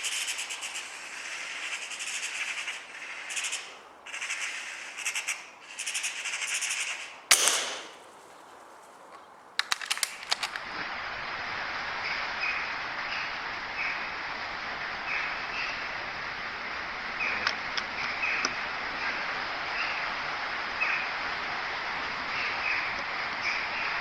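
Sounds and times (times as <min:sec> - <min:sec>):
air rifle shot: 0:07.3 - 0:08.2
quick clicks: 0:07.3 - 0:10.9.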